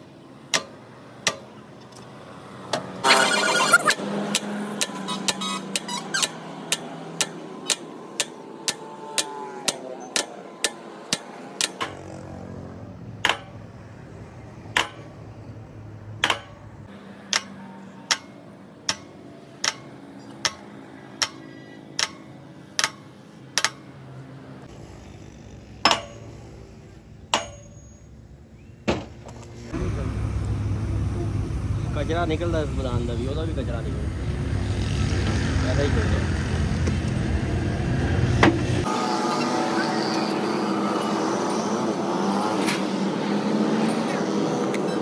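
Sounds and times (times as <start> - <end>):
hammer blows: 3.0 - 12.2, 27.3 - 27.9.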